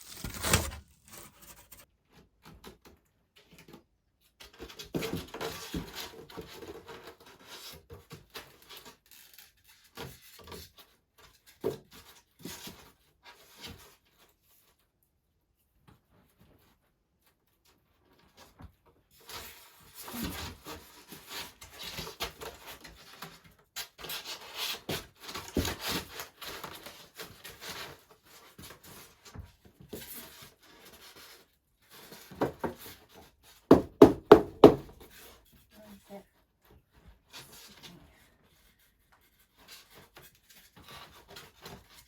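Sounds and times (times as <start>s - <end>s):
board scraping and rubbing: 0.0s - 1.9s.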